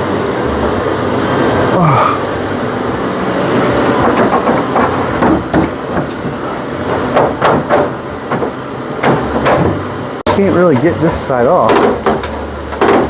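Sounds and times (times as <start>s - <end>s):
steady background noise: 0.0s - 13.0s
hand tools knocking on metal: 4.0s - 13.0s.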